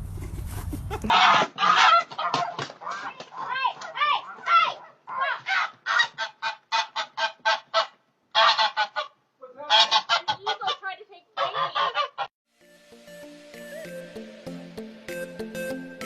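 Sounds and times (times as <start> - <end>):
geese honking: 1.1 - 3.7, 4.4 - 12.3
background music: 12.5 - 16.0.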